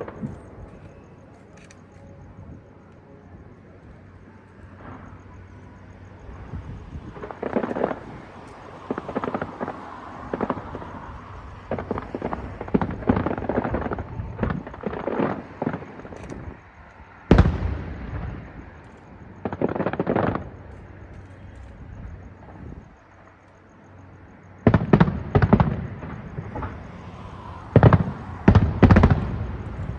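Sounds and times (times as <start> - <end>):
fireworks crackling pops: 7.0 - 22.7.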